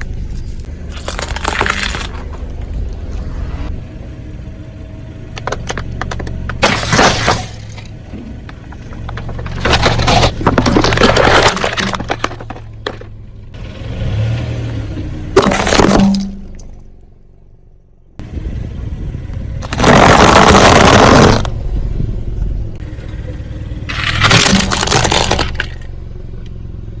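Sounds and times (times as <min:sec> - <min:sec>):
low engine hum: 0:00.0 - 0:27.0
tyre crushing objects: 0:05.4 - 0:13.1, 0:15.4 - 0:16.6, 0:19.6 - 0:21.5, 0:23.9 - 0:25.8.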